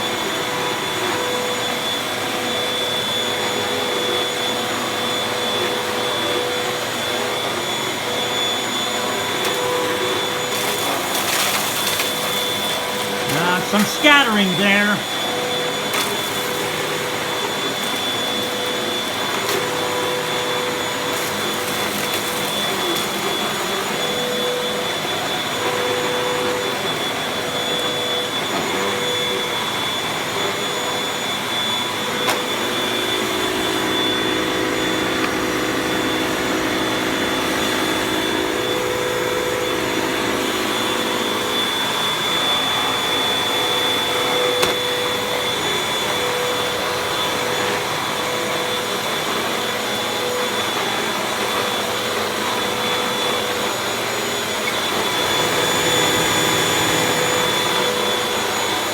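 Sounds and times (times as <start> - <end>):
vacuum cleaner running: 0.0 - 58.9.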